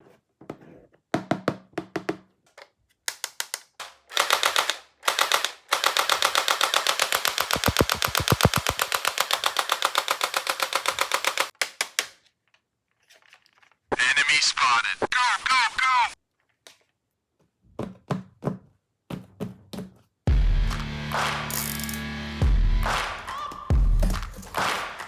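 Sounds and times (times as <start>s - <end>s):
toy machine-gun sound effect: 4.1s - 11.5s.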